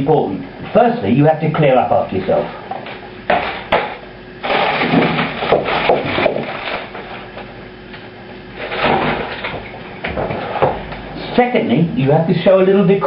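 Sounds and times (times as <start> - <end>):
hard objects clattering: 3.3 - 7.5.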